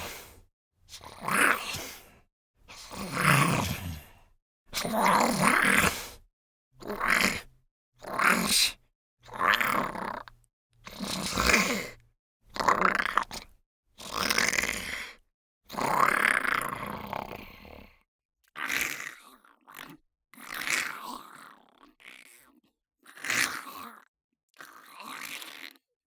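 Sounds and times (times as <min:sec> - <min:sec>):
gravelly monster snarls: 0:00.0 - 0:04.2, 0:04.8 - 0:06.2, 0:06.8 - 0:18.0, 0:18.6 - 0:19.9, 0:20.5 - 0:22.4.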